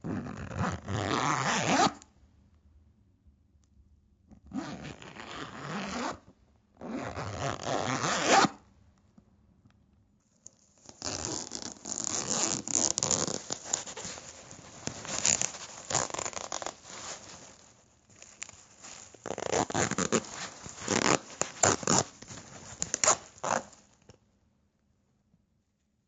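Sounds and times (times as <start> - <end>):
zipper being pulled: 0.0 - 2.0, 4.5 - 6.2, 6.8 - 8.6, 10.8 - 23.8.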